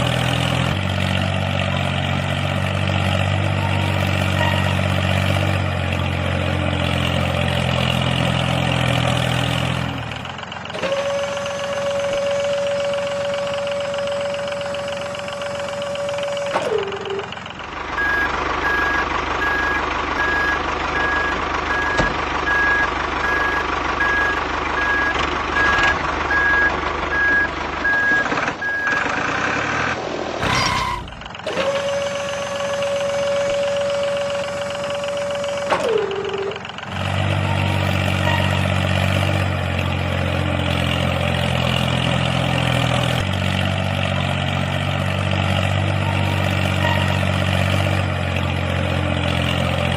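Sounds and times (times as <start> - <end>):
low engine running: 0.0 - 49.9
reversing alarm beeping: 10.8 - 17.3, 18.0 - 29.1, 30.4 - 36.6.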